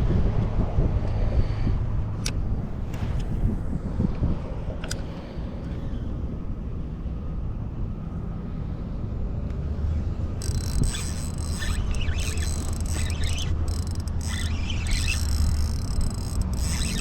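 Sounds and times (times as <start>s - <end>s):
wind rumbling on microphone: 0.0s - 7.3s.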